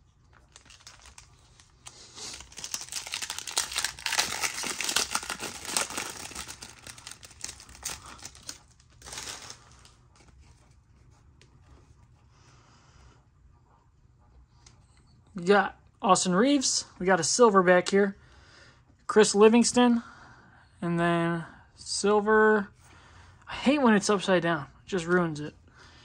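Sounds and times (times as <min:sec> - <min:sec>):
card pack wrapper tearing and crinkling: 0:00.3 - 0:10.3.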